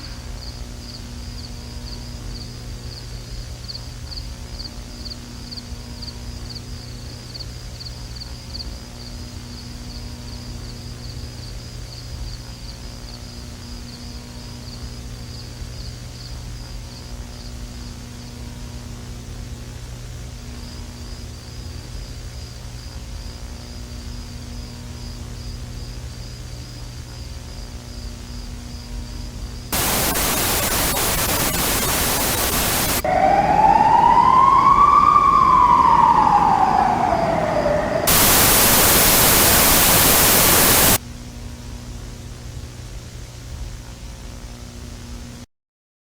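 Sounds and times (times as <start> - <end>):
loud tv static: 29.8 - 33.1, 38.0 - 41.0
faint pulsing high tone: 29.8 - 41.0
low hum: 29.8 - 41.0
siren-like rising and falling tone: 29.8 - 41.0
tape hiss: 29.8 - 41.0.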